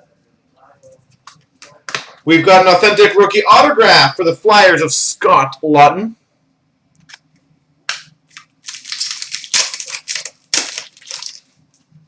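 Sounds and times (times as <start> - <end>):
cards snapping: 7.9 - 11.4
wrappers crinkling: 8.3 - 11.8.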